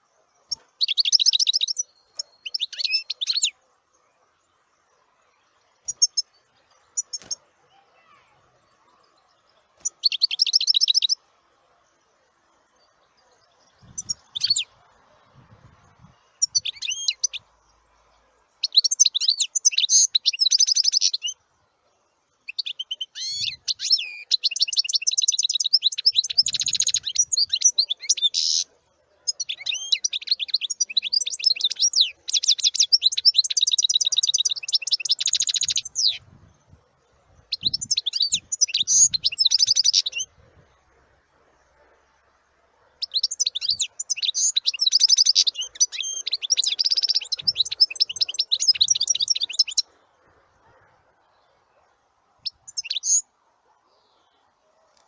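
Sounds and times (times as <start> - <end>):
songbird trilling: 0.5 - 3.6, 5.8 - 7.4, 9.8 - 11.2, 13.7 - 14.8, 16.3 - 17.4, 18.6 - 21.4, 22.5 - 28.7, 29.3 - 36.3, 37.5 - 40.3, 43.0 - 49.9, 52.4 - 53.2.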